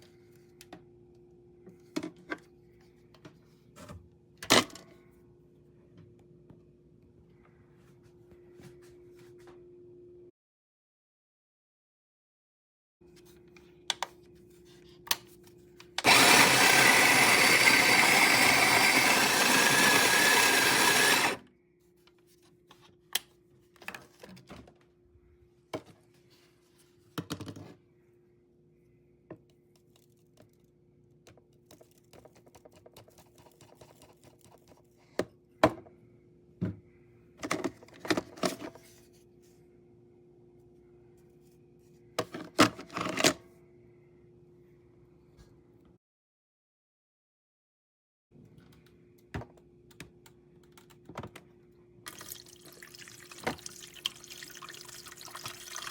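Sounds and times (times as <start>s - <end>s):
small appliance motor whirring: 16.0s - 21.4s.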